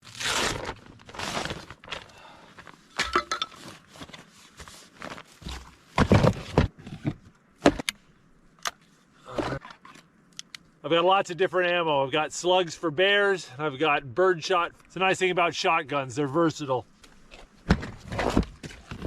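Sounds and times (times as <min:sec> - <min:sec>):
rustling scrapes: 0:00.0 - 0:02.8, 0:03.4 - 0:07.3, 0:17.1 - 0:19.0.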